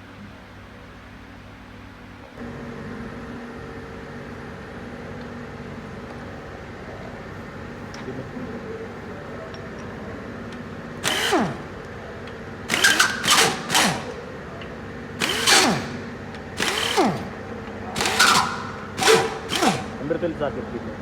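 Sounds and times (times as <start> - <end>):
power tool whining: 11.0 - 14.4, 15.1 - 20.4.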